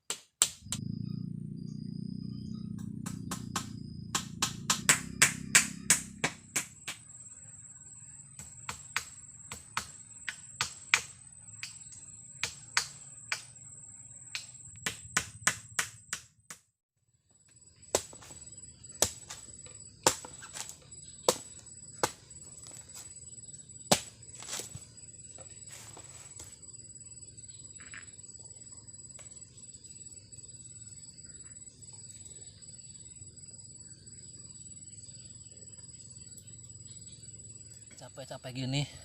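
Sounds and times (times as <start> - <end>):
high-pitched insect drone: 0.7 - 15.6, 17.5 - 39.0
sharp knocks or chops: 3.0 - 7.0, 14.4 - 16.7, 20.0 - 20.7, 23.9 - 24.8.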